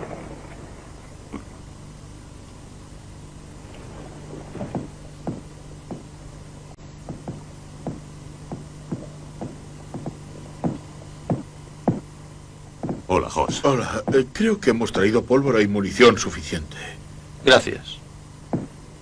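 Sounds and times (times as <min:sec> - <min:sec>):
steady low hum: 0:00.0 - 0:19.0
short knocks: 0:04.6 - 0:06.2, 0:07.1 - 0:12.2, 0:12.8 - 0:14.4, 0:18.5 - 0:18.8.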